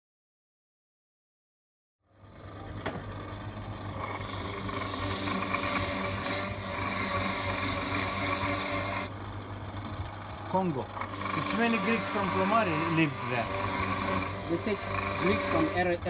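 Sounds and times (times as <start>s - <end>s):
machine motor humming: 2.2s - 16.0s
rasping grinding noise: 3.8s - 16.0s.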